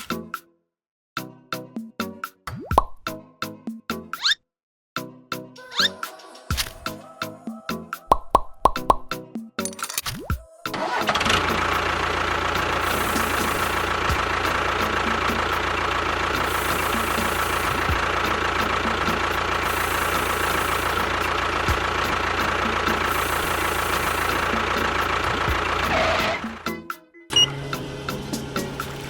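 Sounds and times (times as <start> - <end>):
small motor whining: 10.8 - 26.6, 27.3 - 29.0.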